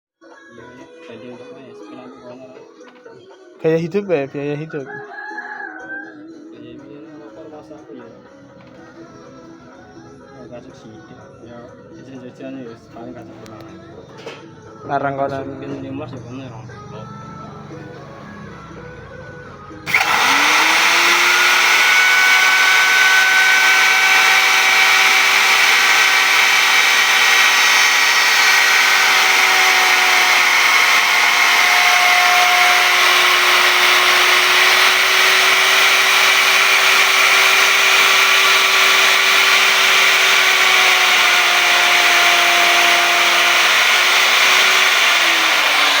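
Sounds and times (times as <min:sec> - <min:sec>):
power tool motor whine: 0:19.9 - 0:46.0.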